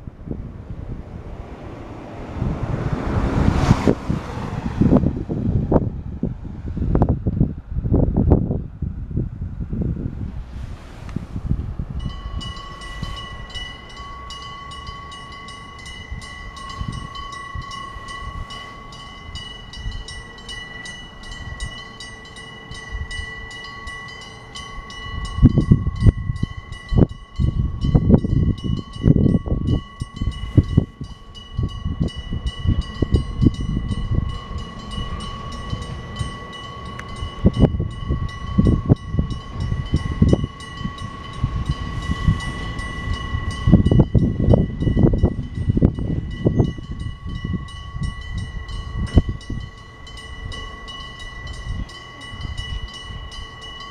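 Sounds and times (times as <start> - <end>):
level crossing bell ringing: 12.0 - 53.9.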